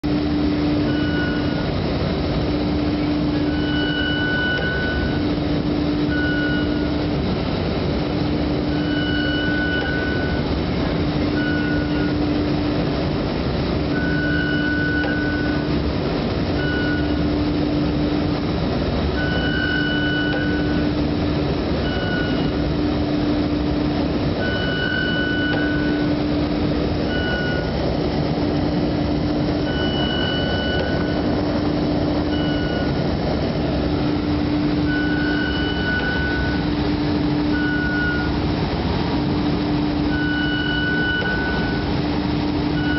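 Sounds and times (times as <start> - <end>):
machine rumble: 0.0 - 42.9
higher-pitched tones: 24.4 - 28.0, 29.4 - 38.4.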